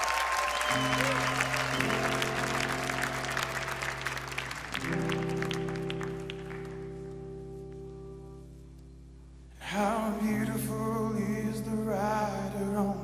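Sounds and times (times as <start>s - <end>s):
congregation applauding: 0.0s - 7.3s
band holding sustained chord: 0.8s - 11.4s.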